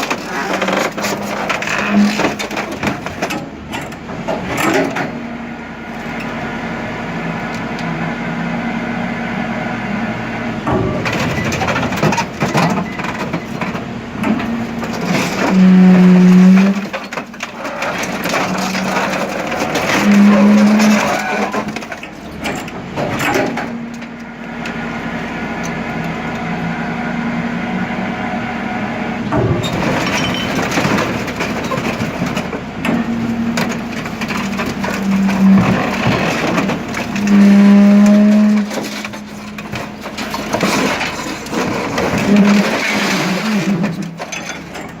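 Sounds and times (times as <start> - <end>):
metal crunching and cracking: 0.0 - 5.2, 10.7 - 26.2, 29.4 - 45.0
hydraulic hum: 0.0 - 45.0.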